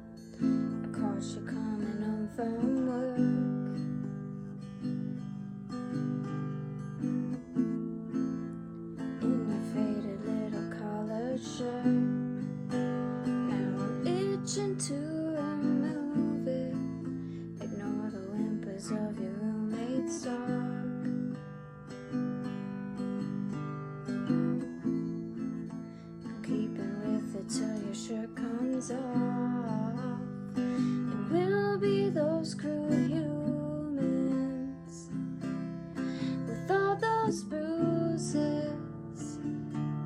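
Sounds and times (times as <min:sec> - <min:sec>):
person singing: 0:00.0 - 0:04.1, 0:09.1 - 0:21.4, 0:26.2 - 0:35.3, 0:35.9 - 0:39.6
acoustic guitar strumming: 0:00.0 - 0:40.0.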